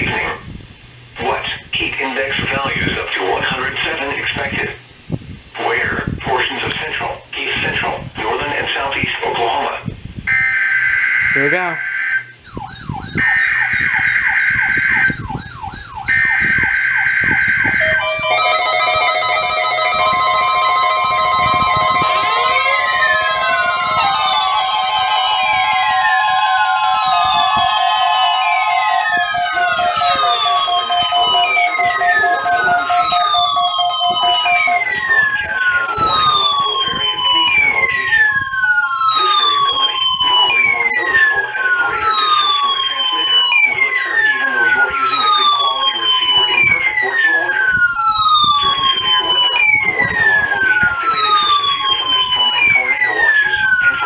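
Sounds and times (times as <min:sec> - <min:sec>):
falling-pitch electronic siren: 0:10.3 - 0:54.0
pulsing beeps: 0:11.2 - 0:54.0
electronic tune of held tones: 0:12.4 - 0:42.7.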